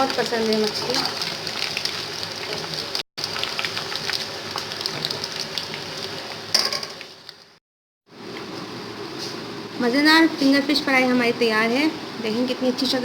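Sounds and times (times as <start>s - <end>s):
food sizzling in hot oil: 0.0s - 7.6s.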